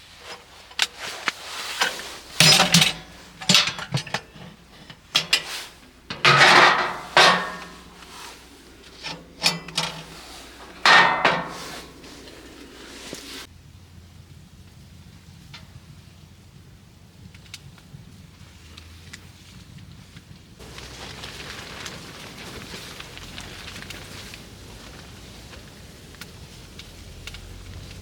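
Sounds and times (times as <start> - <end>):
scraping: 0.2 - 13.5
clatter and knocking: 1.7 - 13.2.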